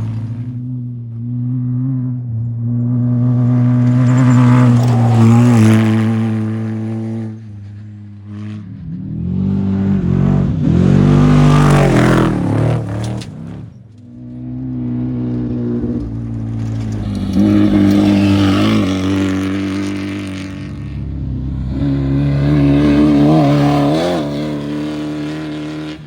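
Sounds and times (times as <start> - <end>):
race vehicles revving past: 0.0 - 26.0
steady engine hum: 0.0 - 26.0.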